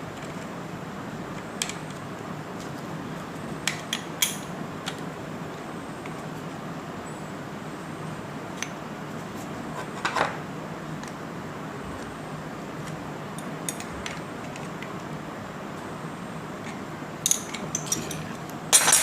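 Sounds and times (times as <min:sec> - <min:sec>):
metal tool parts clinking: 0:17.3 - 0:19.0.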